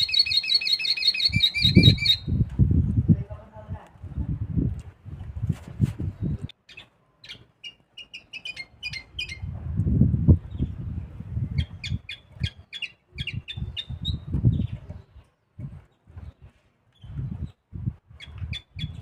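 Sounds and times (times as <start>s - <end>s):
finch chirping song: 0.0s - 2.4s, 6.2s - 9.5s, 11.5s - 15.3s, 18.2s - 19.0s.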